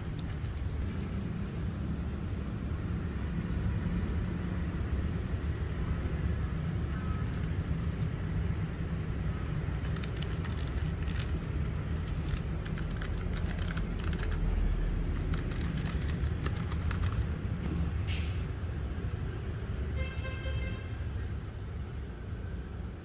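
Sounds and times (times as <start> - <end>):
clicky keyboard keystrokes: 6.9 - 8.1, 9.4 - 14.5, 15.1 - 17.4.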